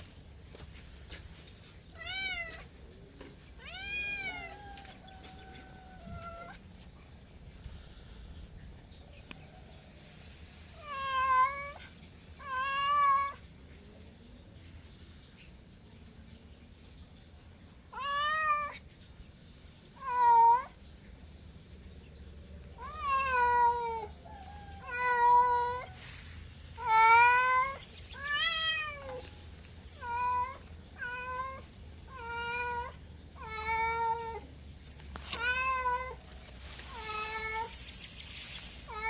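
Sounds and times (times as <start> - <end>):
cat meowing: 2.0 - 2.7, 3.6 - 6.6, 10.8 - 13.4, 17.9 - 18.8, 20.0 - 20.8, 22.8 - 26.0, 26.8 - 29.3, 29.9 - 34.5, 35.3 - 36.2, 36.9 - 37.8.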